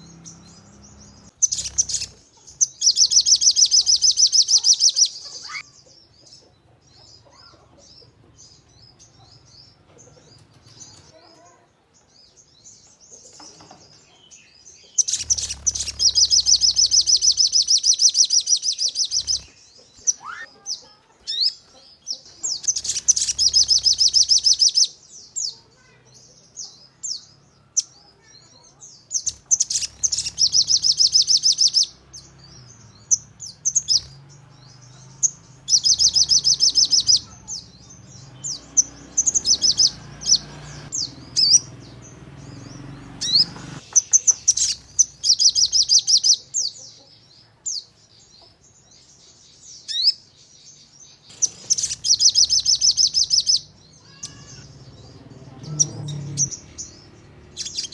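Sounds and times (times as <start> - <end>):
bird trilling: 0.0 - 5.8, 15.0 - 21.8, 22.4 - 25.0, 29.1 - 46.5, 51.3 - 57.9
high bird chirps: 0.0 - 11.6, 12.2 - 47.1, 51.2 - 57.9.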